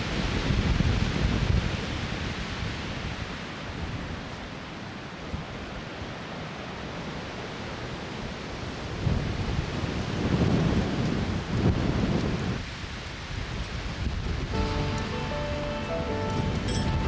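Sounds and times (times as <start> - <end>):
strong wind blowing: 9.0 - 12.6, 13.3 - 17.0.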